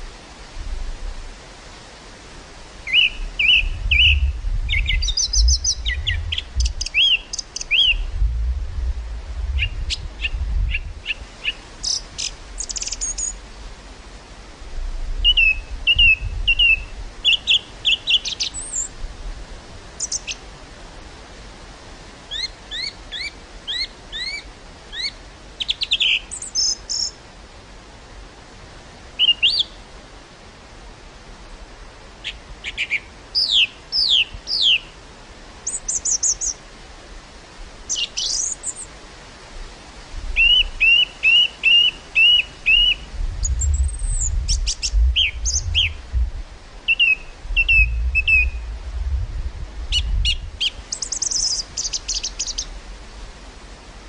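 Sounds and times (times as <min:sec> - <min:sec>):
wind gusts on microphone: 0:00.0 - 0:25.5, 0:34.0 - 0:54.0
small birds chirping: 0:02.9 - 0:08.1, 0:09.6 - 0:13.4, 0:15.3 - 0:18.9, 0:20.0 - 0:20.4, 0:22.3 - 0:27.2, 0:29.2 - 0:29.8, 0:32.2 - 0:34.9, 0:35.6 - 0:36.6, 0:37.9 - 0:38.9, 0:40.4 - 0:46.2, 0:46.9 - 0:48.7, 0:49.9 - 0:52.7.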